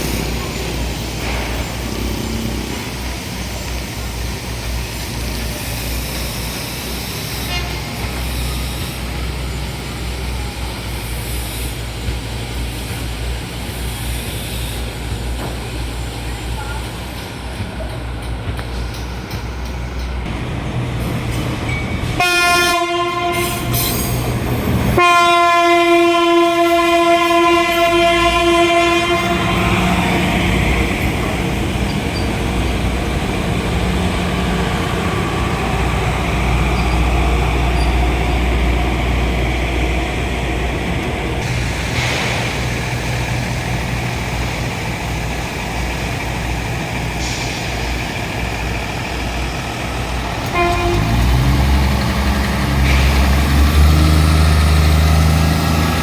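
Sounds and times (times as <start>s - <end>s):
train rumbling past: 0.0s - 56.0s
train horn blasts: 7.4s - 8.3s, 22.2s - 24.1s, 24.9s - 30.2s, 50.4s - 51.9s.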